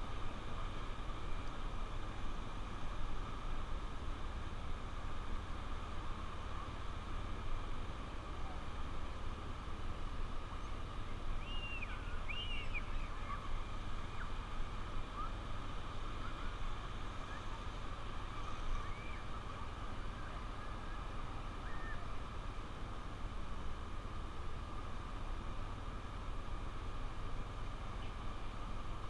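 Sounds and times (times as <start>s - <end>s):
bird calls: 11.4s - 14.4s, 20.2s - 22.1s.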